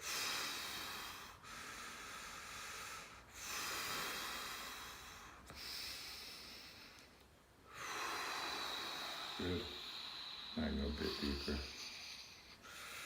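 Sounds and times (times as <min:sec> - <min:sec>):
person breathing deeply: 0:00.0 - 0:13.0.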